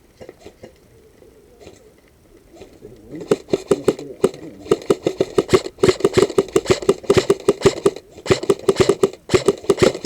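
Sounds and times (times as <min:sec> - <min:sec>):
airsoft gun firing: 0:03.2 - 0:10.0.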